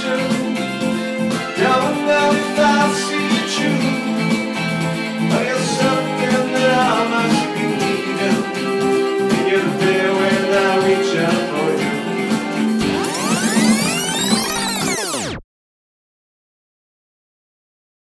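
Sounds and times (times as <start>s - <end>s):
instrumental band music with guitar: 0.0s - 15.3s
sweeping effect: 12.6s - 15.4s.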